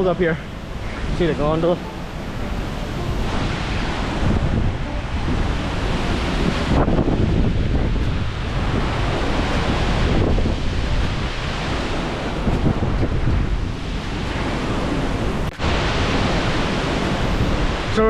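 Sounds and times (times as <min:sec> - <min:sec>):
strong wind on microphone: 0:00.0 - 0:18.0.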